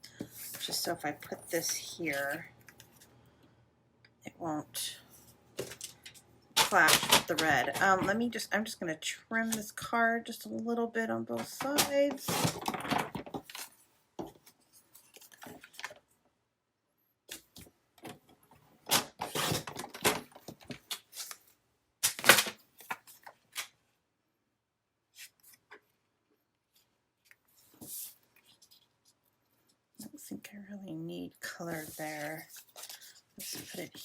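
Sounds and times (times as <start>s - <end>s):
paper rustling: 11.8s - 16.0s, 31.7s - 34.0s.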